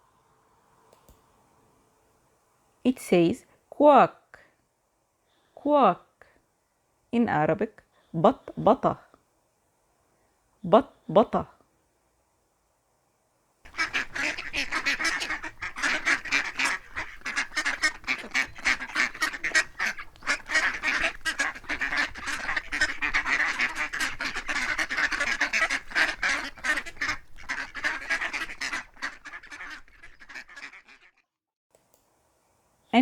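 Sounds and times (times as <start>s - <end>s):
ducks quacking: 13.7s - 31.2s.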